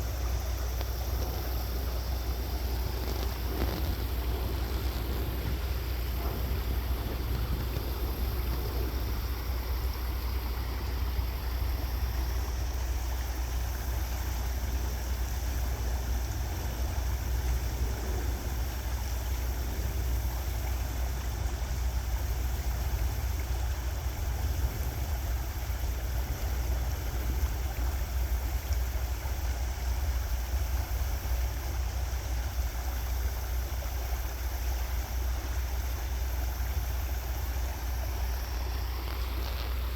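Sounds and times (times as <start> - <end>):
river water rushing: 0.0 - 39.9
low rumble: 1.2 - 11.3.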